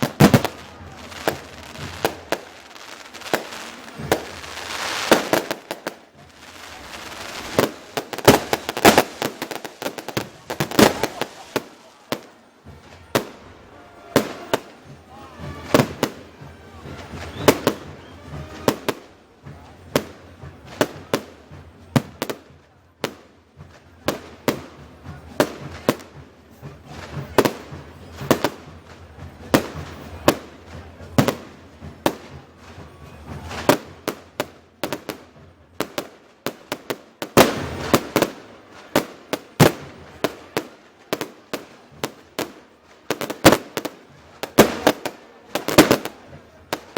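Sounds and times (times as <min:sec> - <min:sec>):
firework shells bursting: 0:00.0 - 0:12.3
fireworks crackling: 0:00.0 - 0:46.9.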